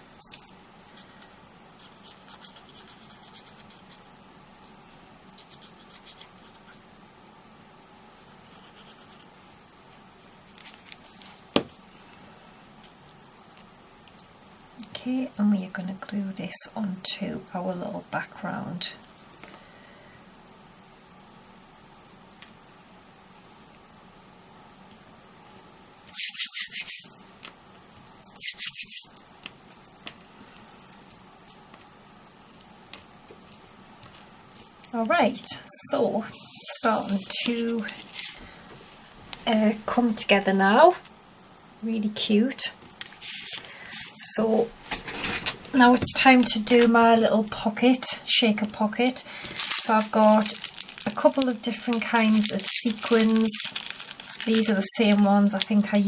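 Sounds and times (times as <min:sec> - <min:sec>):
scratching and rubbing on card: 0:00.3 - 0:06.9, 0:08.2 - 0:11.4, 0:25.9 - 0:27.2, 0:28.0 - 0:29.2, 0:36.2 - 0:38.4, 0:43.1 - 0:44.2
scratchy rubbing on paper: 0:01.8 - 0:04.2, 0:05.4 - 0:06.8, 0:08.3 - 0:09.3, 0:26.0 - 0:27.1, 0:28.1 - 0:29.1.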